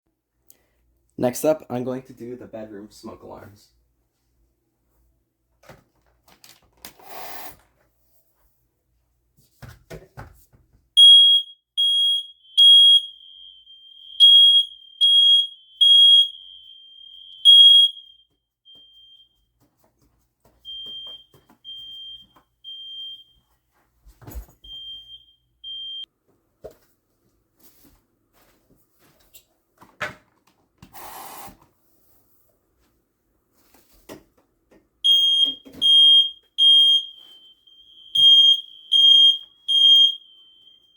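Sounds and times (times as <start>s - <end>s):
smoke alarm beeping: 11.0s - 19.4s, 20.6s - 23.5s, 24.6s - 26.1s, 35.0s - 40.9s
faint smoke alarm beeping: 11.0s - 19.6s, 20.6s - 23.6s, 24.6s - 26.1s, 35.0s - 40.9s.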